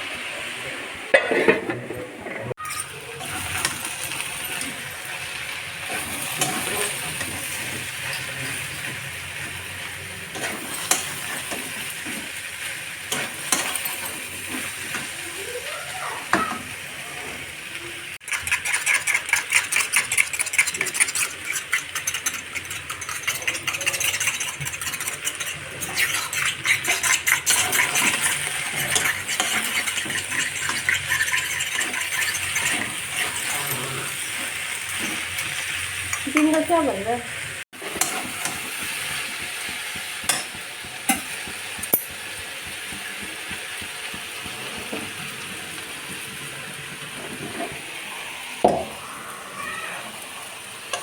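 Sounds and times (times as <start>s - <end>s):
vegetables sizzling in a pan: 2.6s - 18.4s, 25.7s - 51.0s
spatula clicking against pan: 38.0s - 45.0s.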